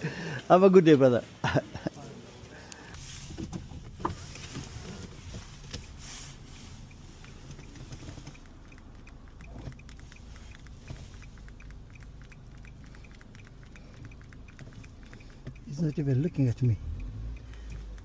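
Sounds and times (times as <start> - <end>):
rapid faint ticks: 5.2 - 18.0.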